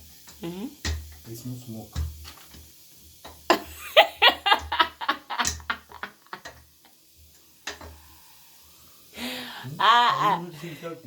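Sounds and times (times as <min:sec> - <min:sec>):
person laughing: 0:03.5 - 0:06.5, 0:09.6 - 0:10.5.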